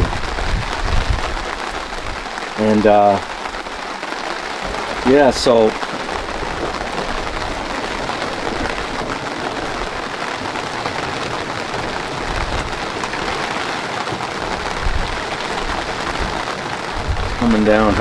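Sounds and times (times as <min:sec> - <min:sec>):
heavy rain pattering: 0:00.0 - 0:18.0
low rumbles: 0:04.4 - 0:18.0.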